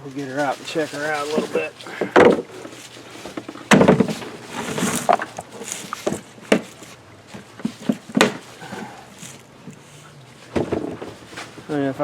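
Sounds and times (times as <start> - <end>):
rustling: 0.0 - 12.0
chainsaw case knocks and clatter: 1.3 - 9.8, 10.5 - 11.3
sharp knocks: 3.7 - 4.3, 7.6 - 8.5.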